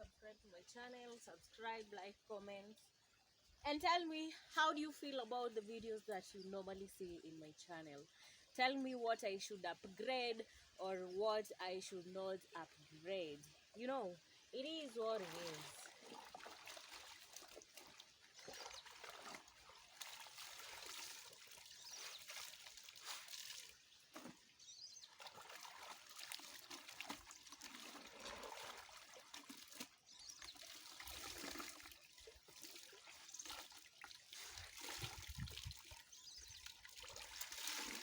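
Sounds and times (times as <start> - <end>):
stream trickling: 0.1 - 38.0
water splashing: 14.6 - 24.5, 25.1 - 38.0.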